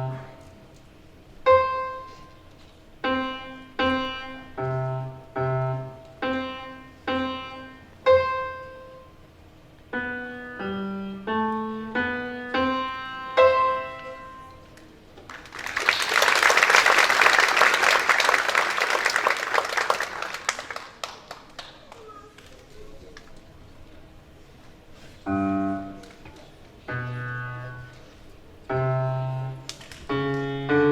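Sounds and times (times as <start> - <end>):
solo piano: 0.0 - 0.4, 1.5 - 2.4, 3.0 - 9.1, 9.9 - 14.6, 25.3 - 26.1, 26.8 - 30.9
applause: 15.3 - 22.6.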